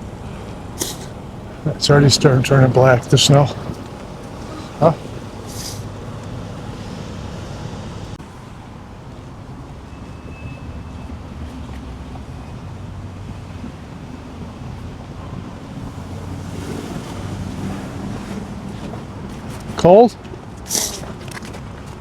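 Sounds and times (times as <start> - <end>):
low steady hum: 0.0 - 9.5
wind buffeting microphone: 0.0 - 9.9, 11.1 - 22.0.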